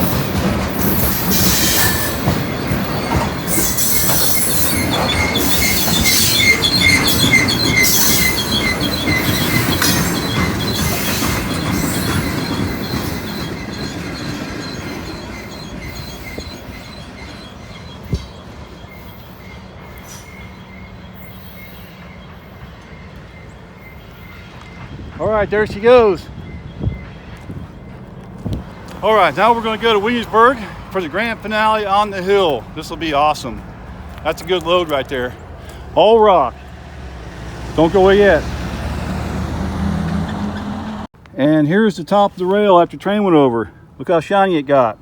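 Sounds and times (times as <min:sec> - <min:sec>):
train wheels squealing: 0:00.0 - 0:25.3, 0:25.9 - 0:28.1
rumble and clack of rail cars: 0:00.0 - 0:41.3.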